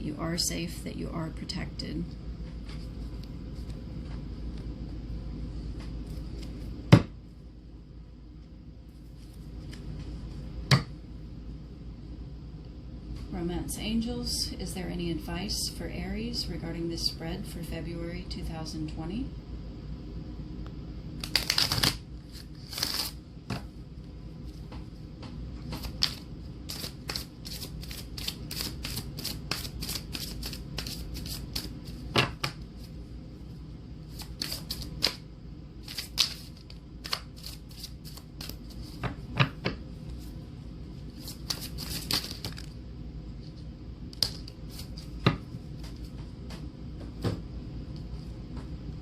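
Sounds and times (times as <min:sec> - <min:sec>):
steady low hum: 0:00.0 - 0:49.0
cards being shuffled: 0:21.2 - 0:23.7, 0:25.6 - 0:32.9, 0:34.1 - 0:35.2, 0:35.8 - 0:40.3, 0:41.1 - 0:42.8, 0:43.5 - 0:46.1.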